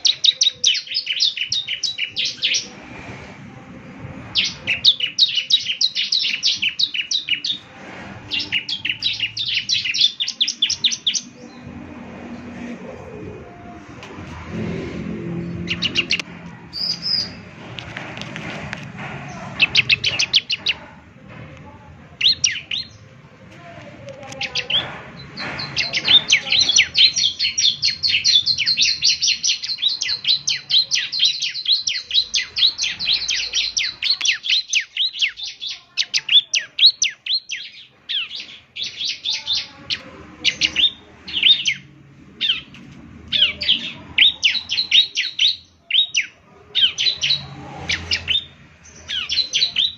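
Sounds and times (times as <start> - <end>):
bird singing high sharp notes: 0.0 - 2.8, 4.3 - 12.5, 14.6 - 17.4, 25.6 - 42.7.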